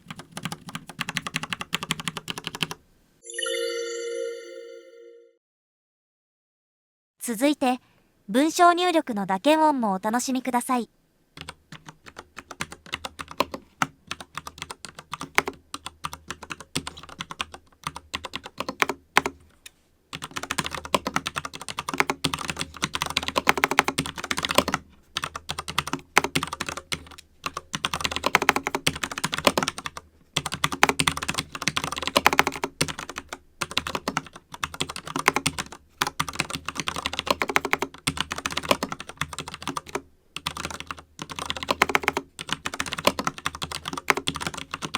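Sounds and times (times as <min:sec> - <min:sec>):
mechanical keyboard typing: 0:00.0 - 0:02.8, 0:11.4 - 0:19.4, 0:20.1 - 0:44.9.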